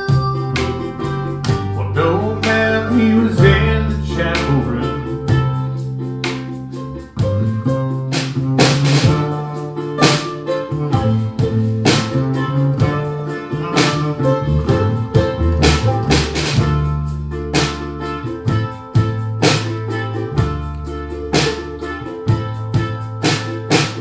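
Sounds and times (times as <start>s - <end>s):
drum kit: 0.0s - 24.0s
guitar chords: 0.0s - 24.0s
cymbal or snare hits: 10.0s - 17.0s.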